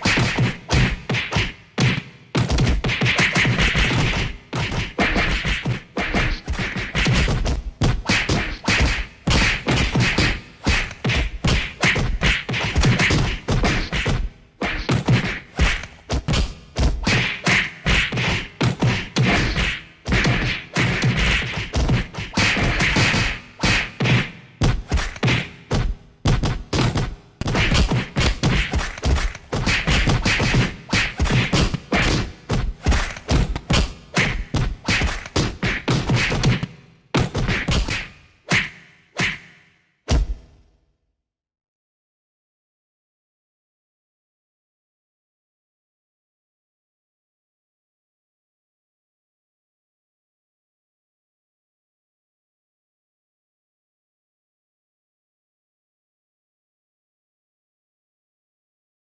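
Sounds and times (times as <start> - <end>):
synthetic punch and hit effects: 0.0 - 40.7.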